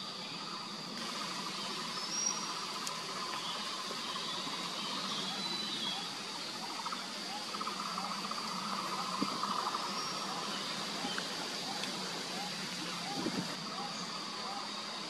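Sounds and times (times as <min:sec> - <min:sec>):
insect pulsing trill: 0:00.0 - 0:15.0
insects high-pitched drone: 0:00.0 - 0:15.0.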